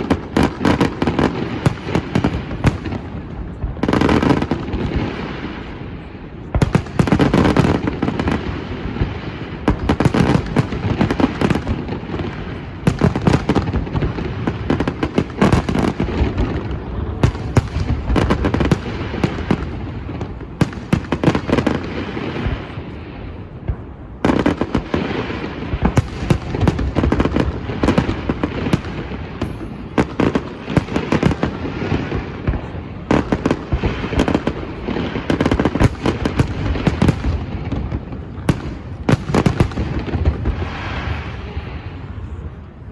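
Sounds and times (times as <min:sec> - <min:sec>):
fireworks bangs and crackling: 0:00.0 - 0:42.9.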